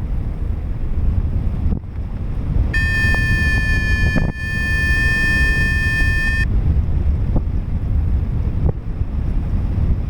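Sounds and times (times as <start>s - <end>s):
wind buffeting microphone: 0.0s - 10.0s
steady high electronic tone: 2.8s - 6.5s.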